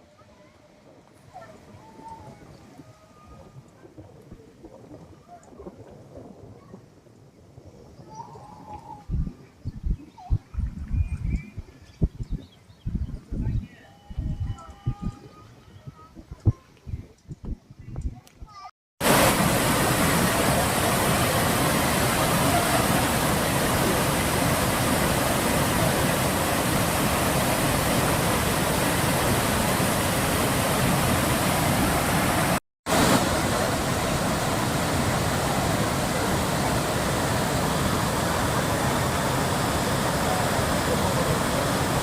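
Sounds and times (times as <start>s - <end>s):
waterfall rushing: 19.0s - 42.0s.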